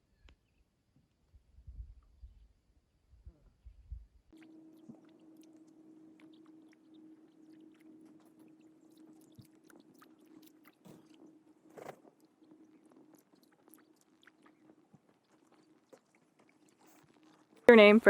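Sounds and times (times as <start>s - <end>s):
faint steady hum: 0.0s - 18.0s
faint ticks: 4.8s - 17.7s.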